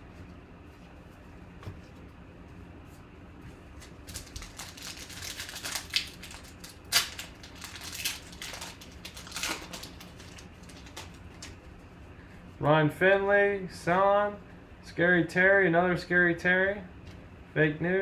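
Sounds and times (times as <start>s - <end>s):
card pack wrapper crinkling: 3.7s - 11.6s.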